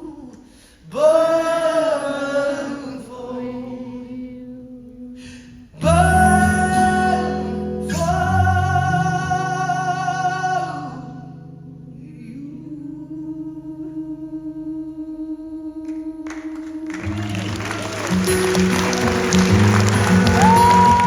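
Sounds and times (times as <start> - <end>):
audience applause and cheering: 16.2 - 21.0
rock band closing chord: 17.2 - 21.0.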